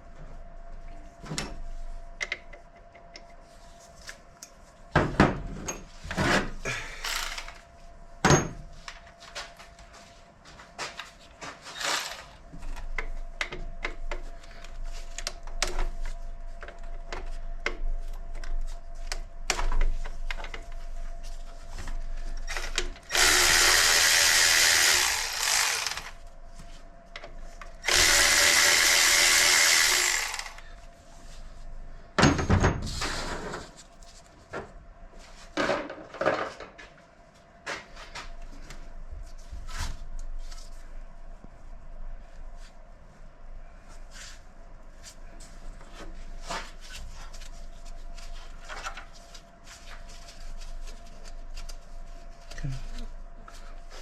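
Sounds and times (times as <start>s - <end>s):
power tool running: 7.1s - 7.5s, 11.8s - 12.4s, 23.0s - 26.2s, 27.8s - 30.7s.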